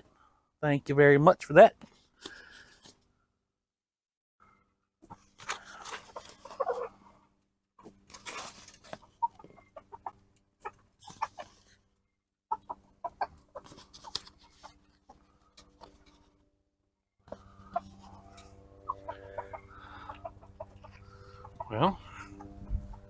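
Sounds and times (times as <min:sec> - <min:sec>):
hens clucking: 0:05.8 - 0:07.1, 0:08.9 - 0:11.7, 0:12.5 - 0:15.3, 0:17.3 - 0:23.0.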